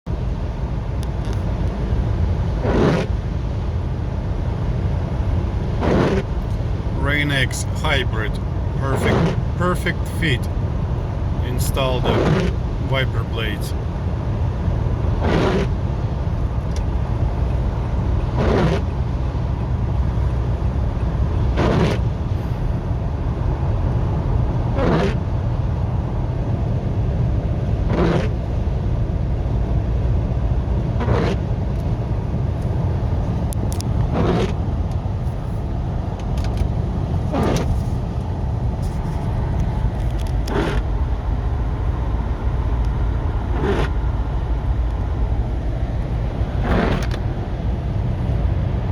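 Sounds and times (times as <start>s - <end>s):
car engine rumble: 0.1s - 48.9s
wiper blades swishing on windshield: 36.2s - 38.2s.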